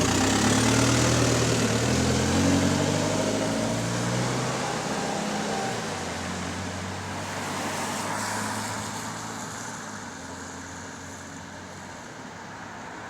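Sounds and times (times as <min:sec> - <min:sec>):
bus engine running: 0:00.0 - 0:06.8
road and cabin noise: 0:00.0 - 0:13.0.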